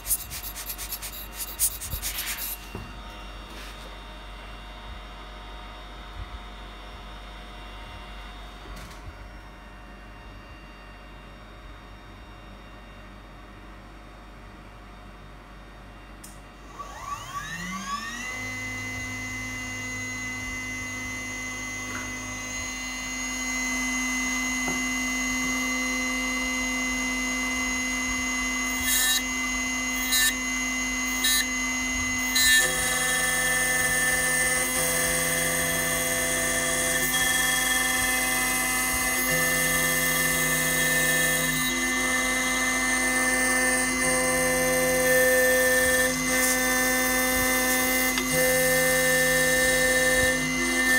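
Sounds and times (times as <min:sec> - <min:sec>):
milling spindle whine: 0:00.0 - 0:03.1, 0:16.7 - 0:50.9.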